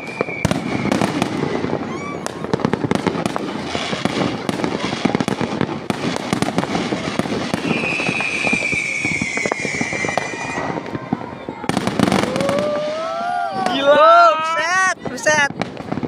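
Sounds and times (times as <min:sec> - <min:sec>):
high falling whistle: 0:00.0 - 0:01.0, 0:07.6 - 0:10.7
fireworks pops crackles and bangs: 0:00.0 - 0:16.0.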